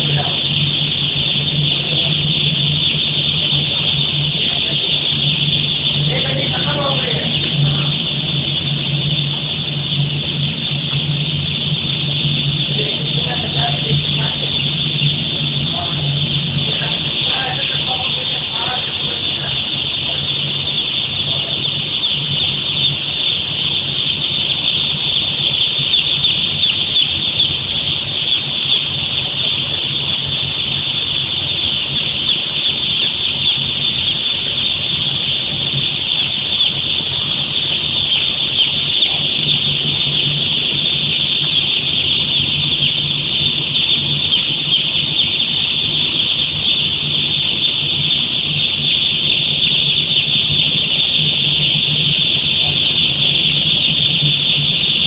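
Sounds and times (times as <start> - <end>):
steady low hum: 0.0 - 55.0
flock of poultry cheeping: 10.9 - 30.1, 31.6 - 55.0.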